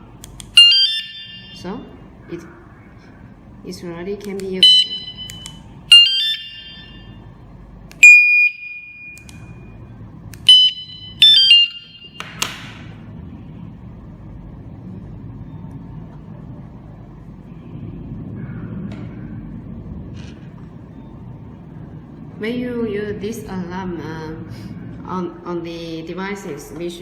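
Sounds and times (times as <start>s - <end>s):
low hum: 0.0s - 27.0s
vehicle alarm beeps: 0.6s - 1.7s, 4.6s - 7.2s, 8.0s - 9.8s, 10.4s - 12.2s.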